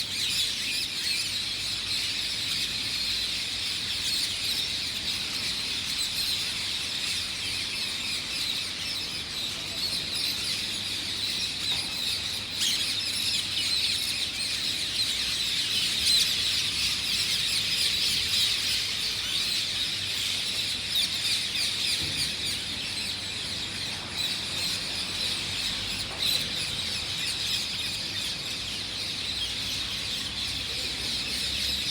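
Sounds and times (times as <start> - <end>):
flock of small birds chirping: 0.0 - 31.9.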